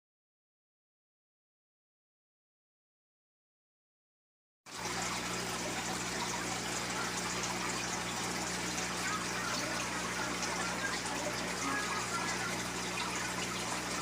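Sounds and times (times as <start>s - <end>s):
running water: 4.7s - 14.0s.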